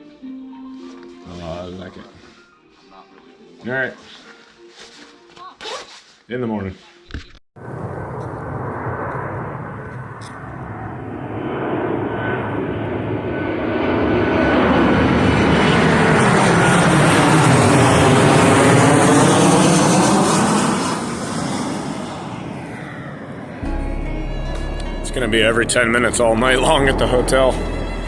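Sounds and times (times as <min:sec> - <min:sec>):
airplane passing overhead: 0:07.6 - 0:28.0.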